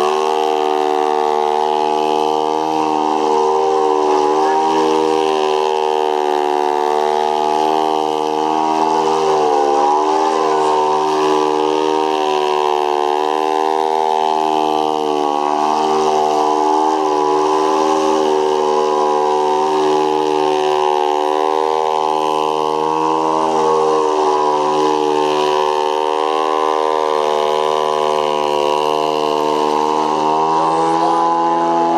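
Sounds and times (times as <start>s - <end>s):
model plane engine running: 0.0s - 31.9s.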